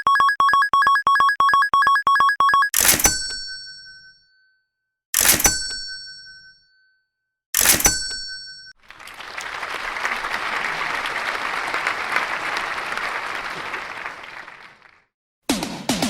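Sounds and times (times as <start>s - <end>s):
crowd applauding: 8.8s - 15.1s.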